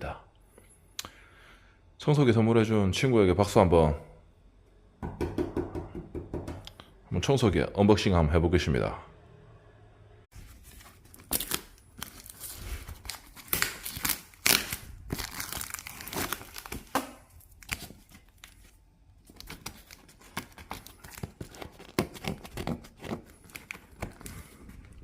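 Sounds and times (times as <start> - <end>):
packaging crinkling: 10.4 - 25.0
packaging being torn open: 11.0 - 24.5.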